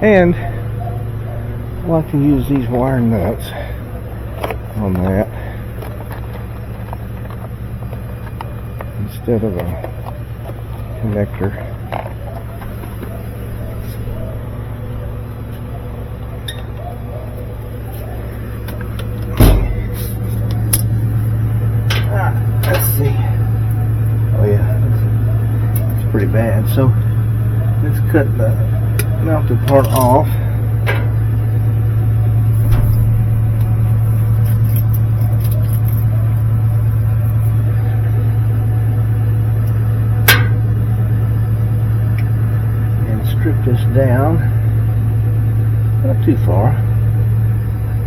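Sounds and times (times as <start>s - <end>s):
low mechanical hum: 0.0s - 48.0s
loud thump: 19.3s - 20.0s, 32.6s - 33.4s.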